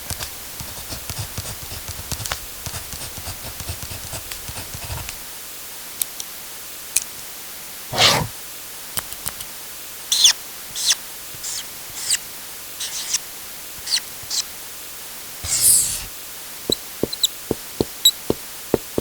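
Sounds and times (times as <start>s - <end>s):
pen scratching on paper: 0.1s - 5.2s, 7.9s - 8.3s, 10.8s - 12.2s, 12.8s - 13.2s, 15.4s - 16.1s.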